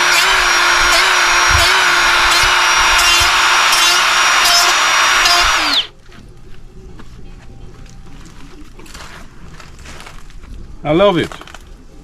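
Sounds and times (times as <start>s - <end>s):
die grinder whining: 0.0s - 5.9s.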